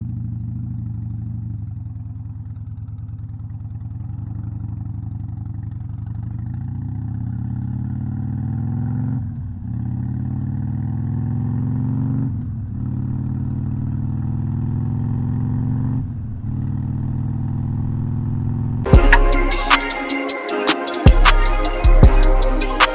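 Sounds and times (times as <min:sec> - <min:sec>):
motorcycle engine accelerating: 0:00.0 - 0:19.7.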